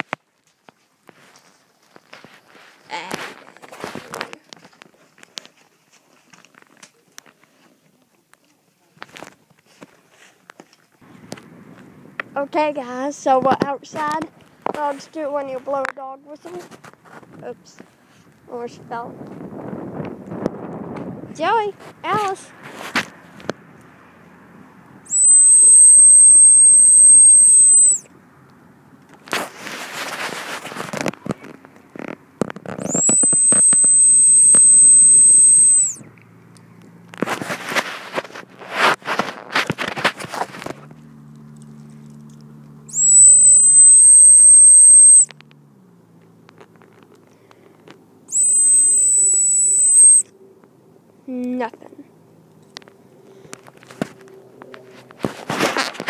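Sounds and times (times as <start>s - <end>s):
rustling noise: 0.0s - 7.8s, 8.9s - 11.9s, 13.3s - 18.3s, 19.2s - 23.6s, 29.1s - 33.7s, 37.0s - 41.1s, 53.4s - 56.0s
high-pitched dog whistle: 25.1s - 28.1s, 32.8s - 36.0s, 42.9s - 45.3s, 48.3s - 50.3s.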